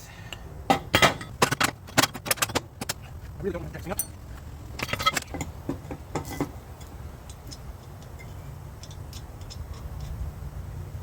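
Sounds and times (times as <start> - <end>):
light metallic clicks and taps: 6.2 - 10.2.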